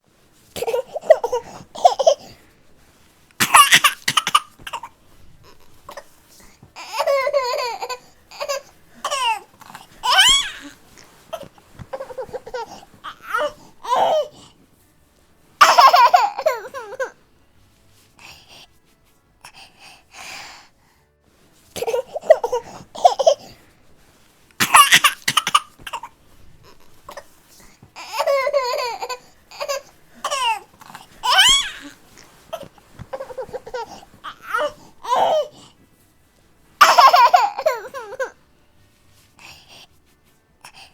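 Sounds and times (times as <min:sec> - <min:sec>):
baby crying and squealing: 0:03.4 - 0:04.7, 0:06.8 - 0:10.8, 0:24.6 - 0:26.0, 0:31.2 - 0:32.0.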